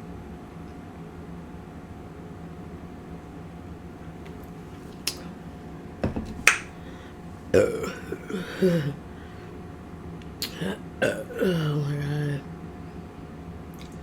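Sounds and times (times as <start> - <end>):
woman burping: 7.5 - 9.0, 10.4 - 12.4.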